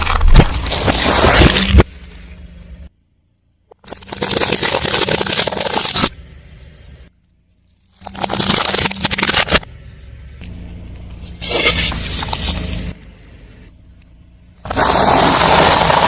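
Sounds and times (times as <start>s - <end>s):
car engine humming: 0.6s - 4.7s, 5.5s - 16.0s.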